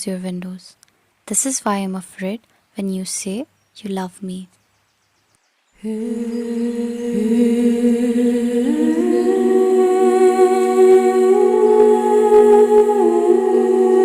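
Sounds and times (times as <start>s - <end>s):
wordless humming vocals: 5.8s - 14.0s.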